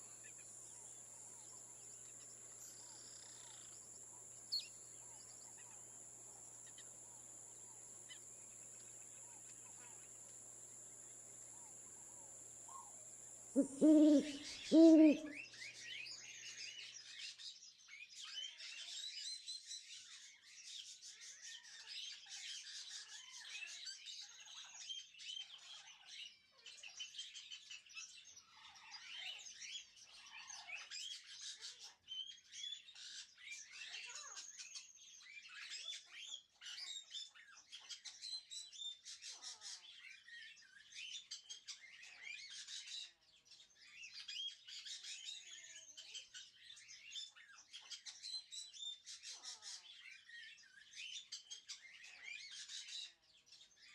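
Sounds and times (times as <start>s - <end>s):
small birds chirping: 0.0s - 17.1s.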